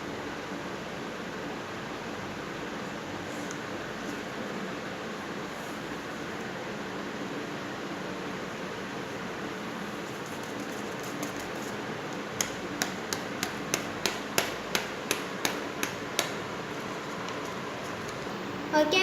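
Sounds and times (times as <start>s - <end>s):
light sharp taps on paper: 10.6s - 16.4s.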